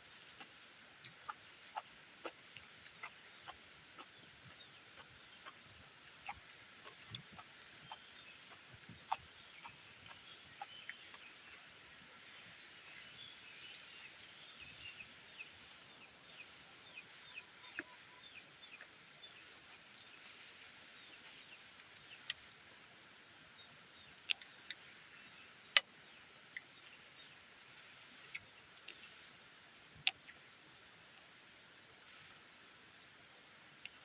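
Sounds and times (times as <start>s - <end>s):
birds chirping: 1.8s - 22.8s.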